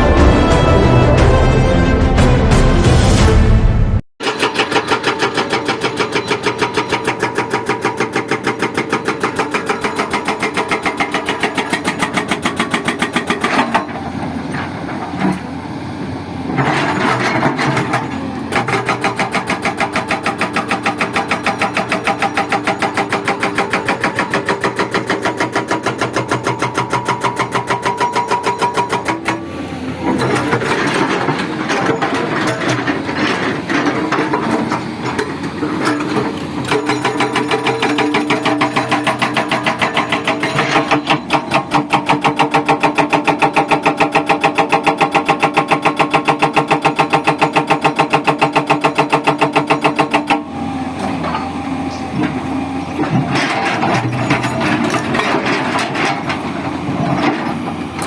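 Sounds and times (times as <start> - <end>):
hydraulic breaker hammering: 4.2 - 15.4, 16.5 - 58.0
diesel engine running: 29.2 - 41.9, 50.4 - 58.0.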